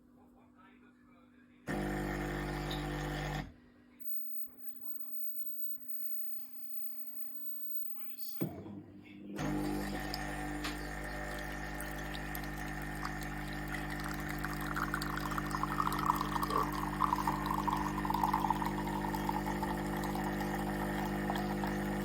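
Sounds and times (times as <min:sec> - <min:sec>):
coffee pouring into a cup: 0:01.7 - 0:03.5, 0:09.4 - 0:22.0
espresso machine pump humming: 0:01.7 - 0:03.5, 0:09.4 - 0:22.0.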